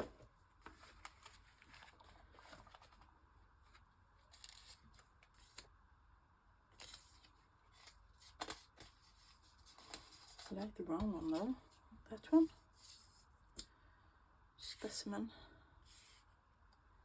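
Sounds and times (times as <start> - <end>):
paper labels rustling and clicking: 0.0 - 5.7, 6.7 - 11.6.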